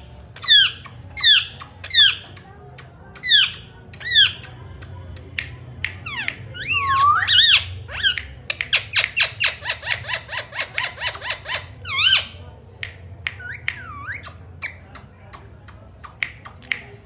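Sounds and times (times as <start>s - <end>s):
parakeet calling: 0.4s - 2.4s, 3.2s - 4.5s, 6.0s - 12.4s.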